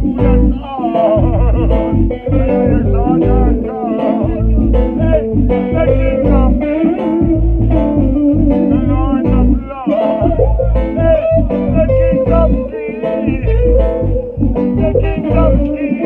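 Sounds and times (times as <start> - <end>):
band playing live: 0.0 - 16.0
electric guitar: 0.0 - 16.0.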